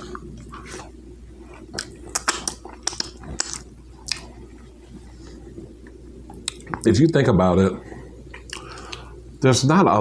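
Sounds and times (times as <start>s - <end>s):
person chewing food: 0.0s - 6.8s, 8.3s - 9.2s.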